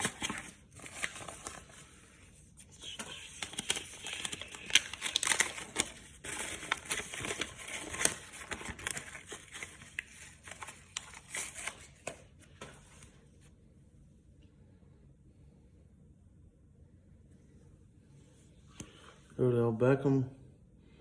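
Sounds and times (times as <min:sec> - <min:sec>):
packaging crinkling: 0:00.0 - 0:01.9, 0:02.7 - 0:12.4.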